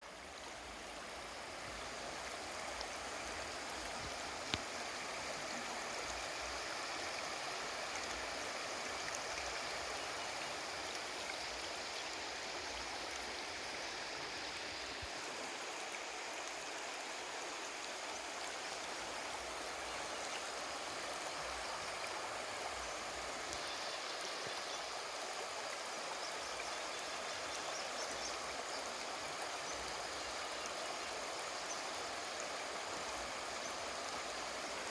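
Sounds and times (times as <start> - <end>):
river water flowing over rocks: 0.0 - 34.9.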